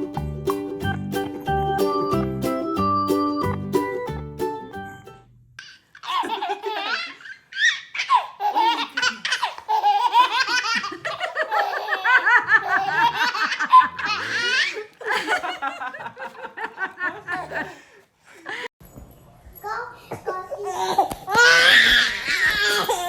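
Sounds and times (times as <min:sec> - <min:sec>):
tinkly toy keyboard tune: 0:01.4 - 0:03.6
baby laughing: 0:05.6 - 0:15.4, 0:17.2 - 0:17.8.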